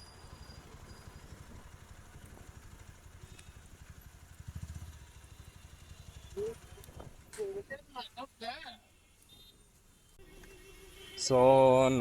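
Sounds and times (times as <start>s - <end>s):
motorcycle engine idling: 0.0s - 8.0s.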